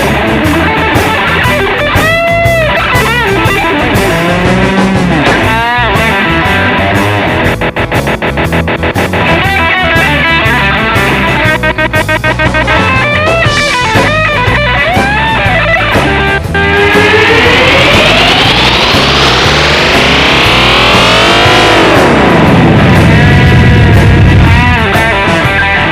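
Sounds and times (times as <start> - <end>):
electric guitar with delay effect: 0.0 - 25.9.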